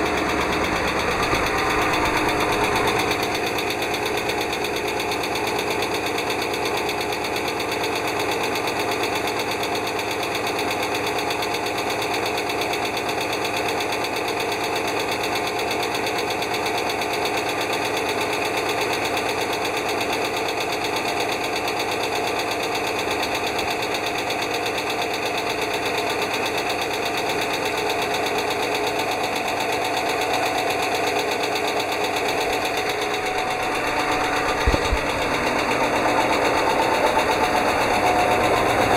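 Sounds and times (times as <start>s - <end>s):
rapid valvetrain ticking: 0.0s - 5.2s, 27.9s - 38.9s
bus engine running: 0.0s - 7.8s, 25.1s - 38.9s.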